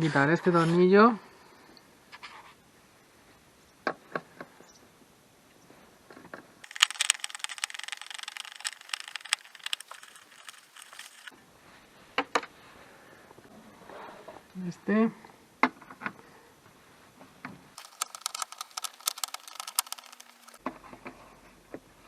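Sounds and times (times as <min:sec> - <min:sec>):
hand ratchet clicking rapidly: 0:17.8 - 0:20.6.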